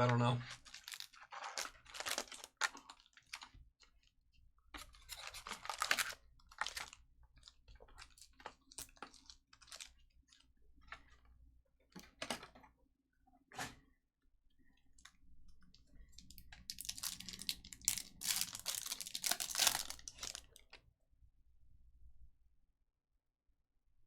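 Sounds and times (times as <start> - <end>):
foil wrappers crinkling: 0.4 - 3.6, 4.8 - 10.4, 16.1 - 20.8.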